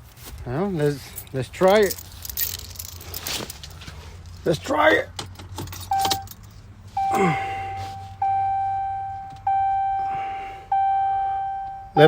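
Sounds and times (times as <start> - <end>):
keys rattling: 0.9 - 4.5, 5.2 - 6.6
car warning chime dinging: 5.8 - 12.0.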